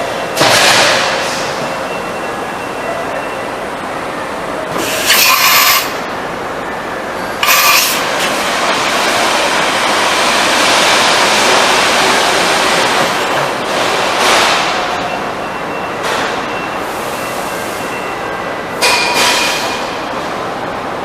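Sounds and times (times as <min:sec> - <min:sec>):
machine rushing hiss: 0:04.8 - 0:06.0.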